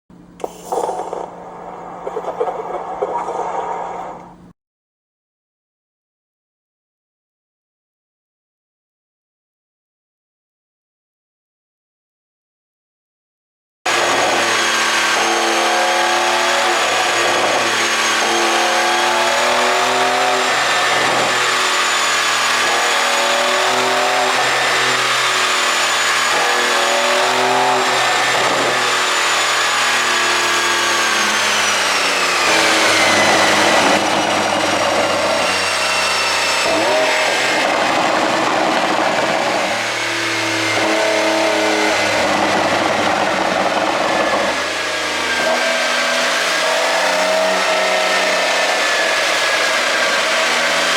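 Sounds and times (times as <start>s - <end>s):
steady high whine: 0.2s - 4.5s.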